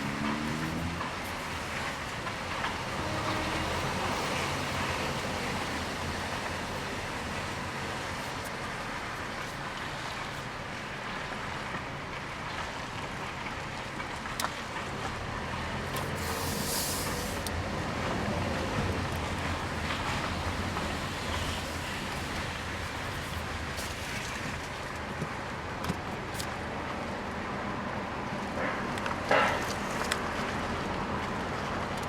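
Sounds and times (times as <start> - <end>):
vehicle engine running: 0.0 - 8.5
brief hiss: 16.1 - 17.5.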